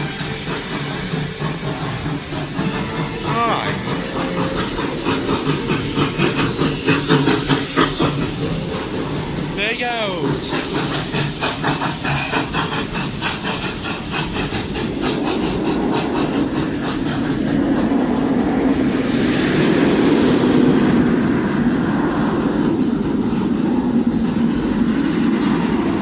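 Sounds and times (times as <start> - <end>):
train rumble: 0.0 - 26.0
train wheels clicking over rail joints: 0.0 - 26.0
thin wheel squeals: 21.1 - 26.0.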